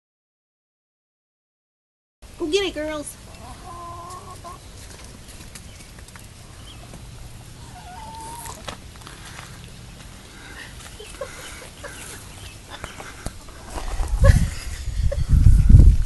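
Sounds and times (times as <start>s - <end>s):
hens clucking: 3.2s - 15.8s.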